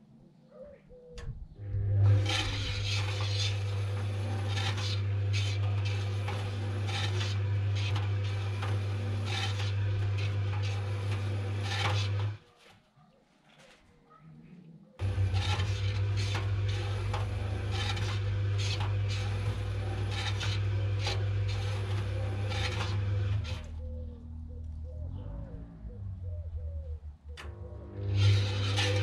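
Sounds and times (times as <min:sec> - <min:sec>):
washing machine motor humming: 0:01.6 - 0:12.4, 0:15.0 - 0:23.8, 0:27.4 - 0:29.0
balloons scraping against drum: 0:02.0 - 0:12.4, 0:15.0 - 0:23.7, 0:28.0 - 0:29.0.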